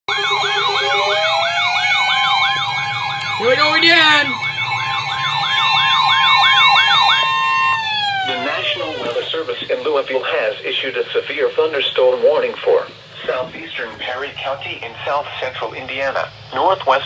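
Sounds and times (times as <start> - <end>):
electronic siren yelping: 0.1 - 9.5
steady siren tones: 0.1 - 10.8.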